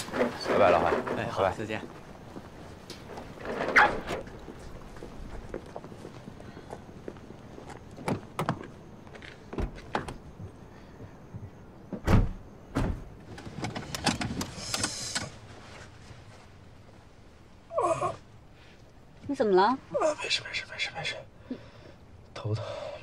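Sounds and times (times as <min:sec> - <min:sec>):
rustling: 0:00.0 - 0:08.0, 0:13.2 - 0:17.6
car door shutting: 0:11.9 - 0:15.4.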